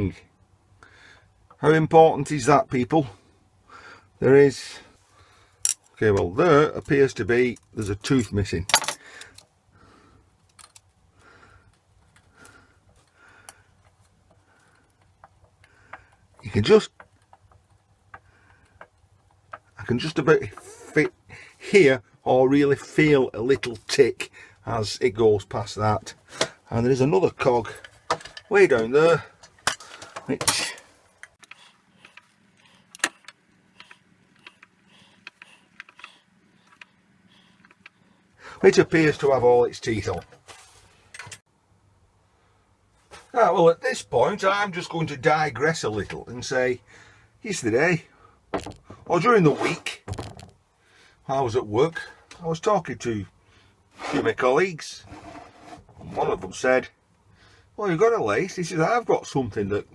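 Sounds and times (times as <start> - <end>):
lathe gears clicking and rubbing: 31.4 - 38.4
sharp ticks: 31.4 - 38.4.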